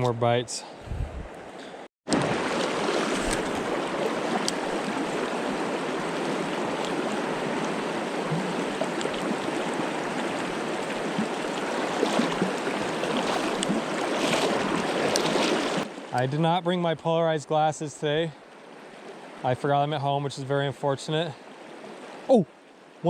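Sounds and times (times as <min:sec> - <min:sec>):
mountain stream rushing: 0:02.1 - 0:16.5.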